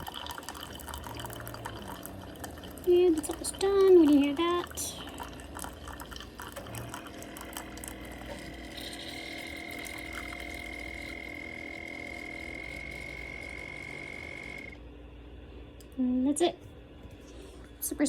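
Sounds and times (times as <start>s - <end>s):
coffee trickling into cup: 0.0s - 14.7s
high steady whine: 8.3s - 14.8s.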